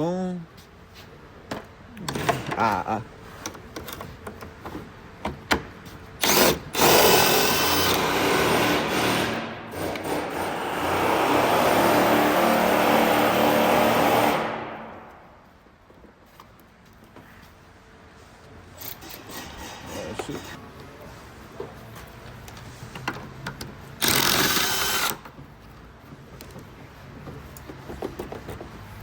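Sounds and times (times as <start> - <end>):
power drill whirring: 6.2 - 14.7, 24.0 - 25.2.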